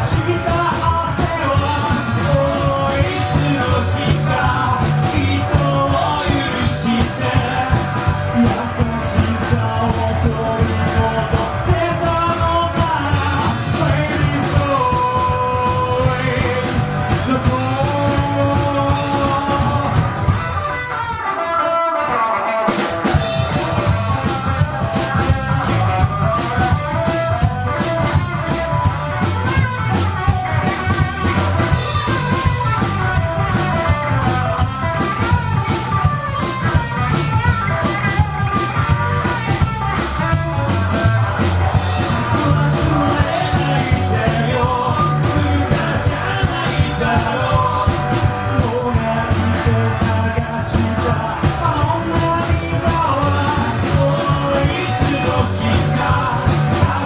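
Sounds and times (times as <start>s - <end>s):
person singing: 0.0s - 20.5s, 38.5s - 57.0s
drums: 0.0s - 57.0s
electric guitar: 0.0s - 57.0s.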